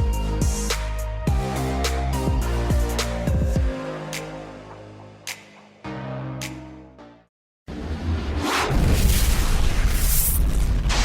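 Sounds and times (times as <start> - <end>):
sustained music chords: 0.0 - 7.2.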